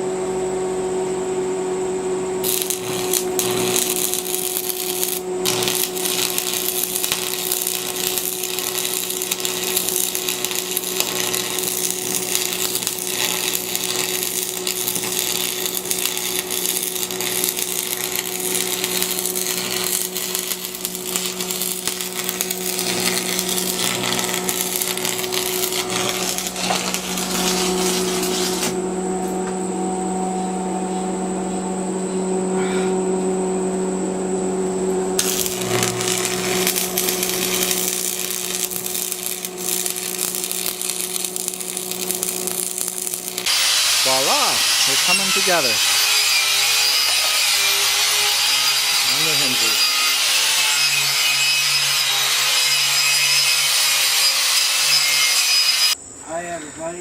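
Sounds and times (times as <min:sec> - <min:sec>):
steady hum: 0:00.0 - 0:44.6
welding arc crackling: 0:02.4 - 0:28.8, 0:35.2 - 0:56.0.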